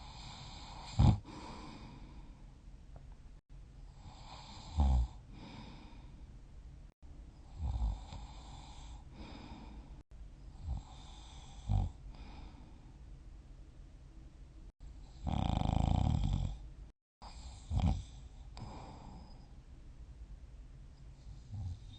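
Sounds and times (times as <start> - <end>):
person snoring: 0.0 - 2.3, 4.0 - 6.1, 7.5 - 10.0, 10.6 - 12.7, 15.2 - 16.6, 17.3 - 19.5
soft breathing: 0.0 - 2.6, 4.0 - 6.4, 8.1 - 13.0, 17.2 - 19.6.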